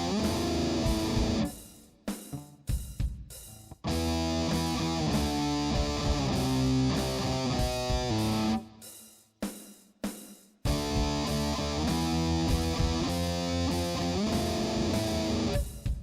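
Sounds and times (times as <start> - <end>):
distorted electric guitar rock riff: 0.0 - 1.7, 3.7 - 8.6, 10.7 - 15.8.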